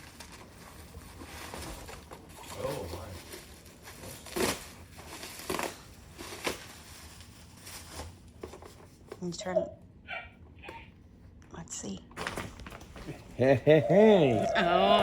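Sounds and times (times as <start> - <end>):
packaging crinkling and rustling: 0.0 - 9.1.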